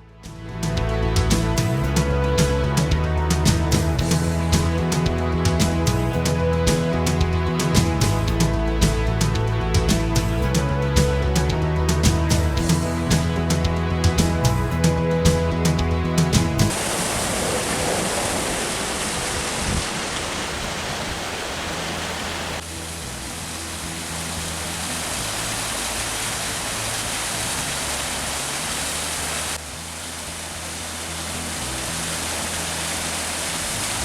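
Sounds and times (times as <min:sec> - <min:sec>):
waterfall rushing over rocks: 0:15.5 - 0:34.0.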